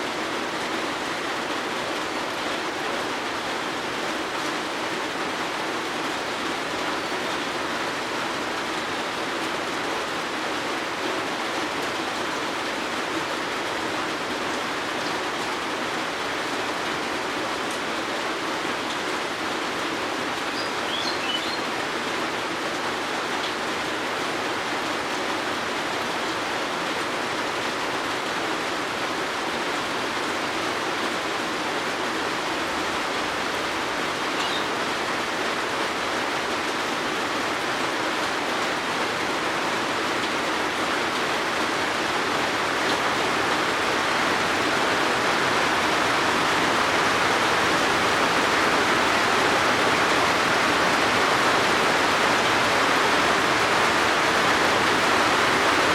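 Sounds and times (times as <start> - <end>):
steady rain falling: 0.0 - 55.9
faint bird chirp: 20.5 - 21.7, 34.3 - 34.8.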